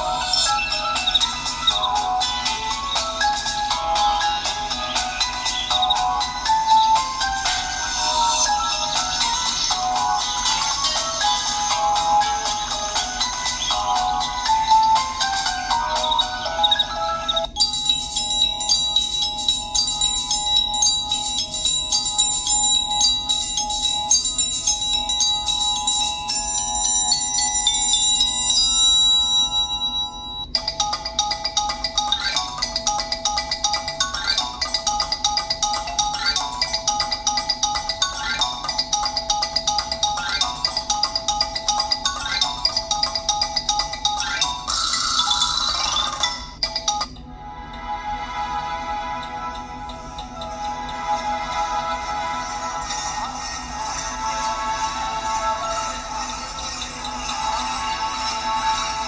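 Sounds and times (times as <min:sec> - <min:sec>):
ringtone tune of short notes: 0:00.0 - 0:47.2
ringtone melody of ringing notes: 0:00.0 - 0:59.0.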